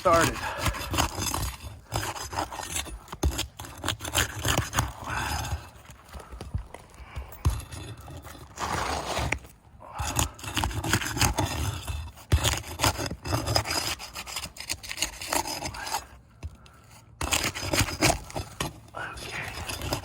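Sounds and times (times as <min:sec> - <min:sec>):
shingles scraping and rubbing: 0:00.0 - 0:20.0.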